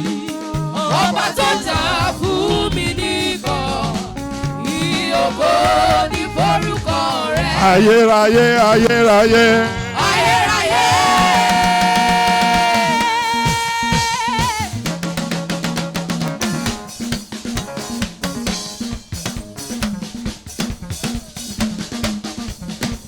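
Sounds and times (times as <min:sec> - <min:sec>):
drum kit snare and kick: 0:00.0 - 0:23.0
bass line: 0:01.4 - 0:13.4
held sung note with vibrato: 0:01.4 - 0:14.1.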